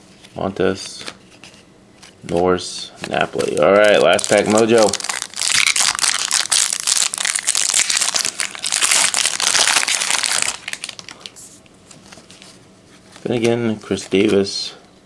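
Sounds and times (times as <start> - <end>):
cards rustling: 0.2 - 14.6
wrapper crinkling as torn open: 3.2 - 11.4.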